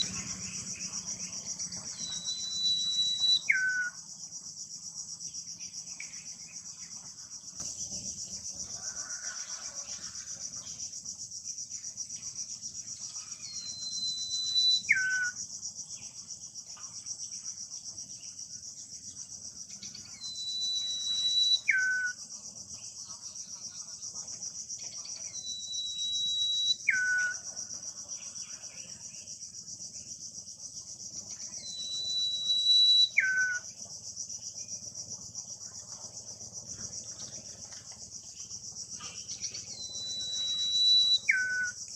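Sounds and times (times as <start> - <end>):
bird whistling call: 0.0 - 0.5, 1.8 - 4.0, 13.4 - 15.4, 20.0 - 22.2, 25.2 - 27.5, 31.5 - 33.7, 39.4 - 41.8
insects droning: 0.0 - 41.9.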